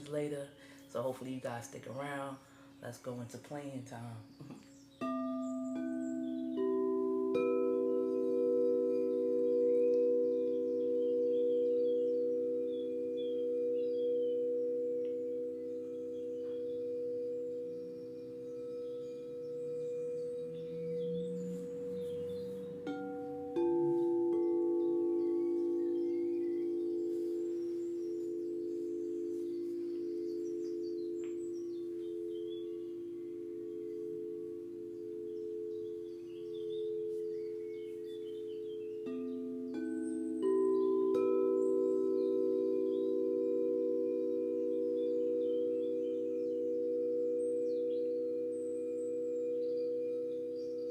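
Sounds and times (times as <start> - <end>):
singing bowls ringing: 4.6 - 50.9
singing bowl struck: 5.0 - 38.4.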